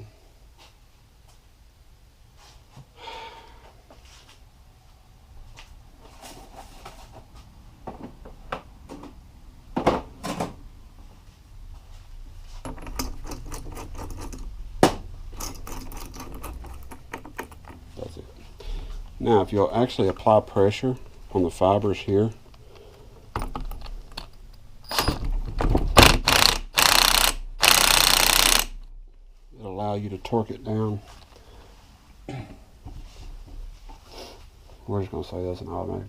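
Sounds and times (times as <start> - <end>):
metal tools clinking: 15.3 - 18.2.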